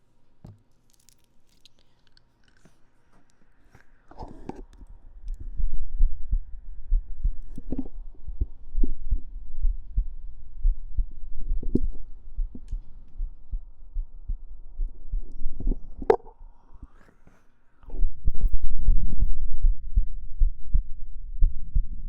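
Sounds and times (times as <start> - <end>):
heartbeat thumps: 5.3 - 16.6, 18.2 - 22.0.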